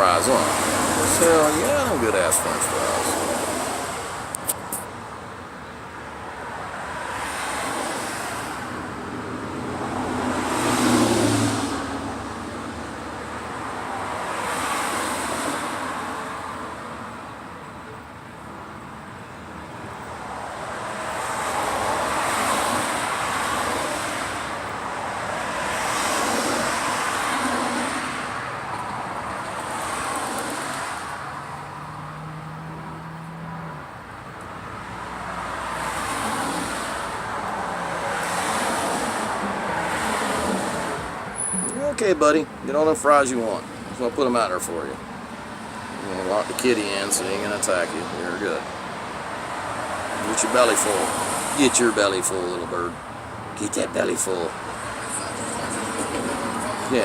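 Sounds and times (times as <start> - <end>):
cars passing: 0.0 - 57.0.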